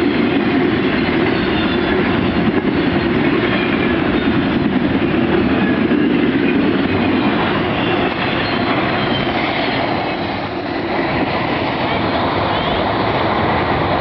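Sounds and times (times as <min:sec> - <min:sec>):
train wheels rumbling on rails: 0:00.0 - 0:14.0
faint wheel squeal: 0:07.7 - 0:10.0.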